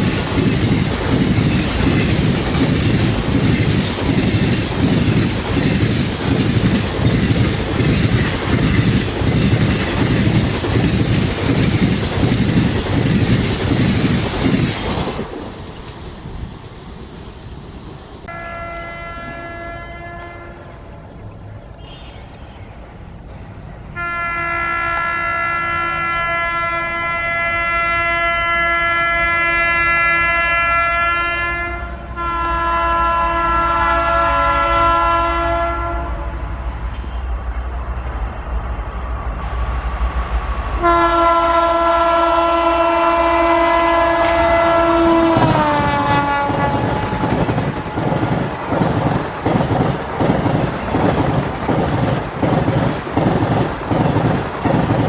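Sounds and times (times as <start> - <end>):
train rushing past: 0.0 - 55.0
locomotive horn blasts: 18.3 - 20.8, 24.0 - 37.3, 40.8 - 47.4.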